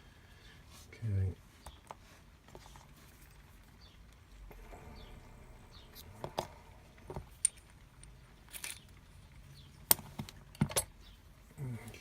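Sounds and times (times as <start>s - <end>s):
metal lock parts clicking: 4.6s - 9.1s.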